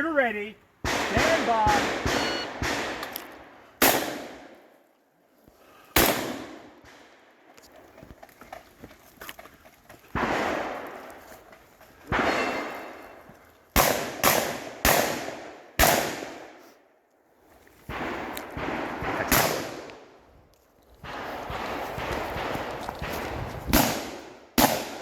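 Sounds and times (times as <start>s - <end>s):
shotgun shots echoing: 0.8s - 4.6s, 6.0s - 6.7s, 10.2s - 11.1s, 12.1s - 13.1s, 13.8s - 16.6s, 17.9s - 20.1s, 21.0s - 25.0s.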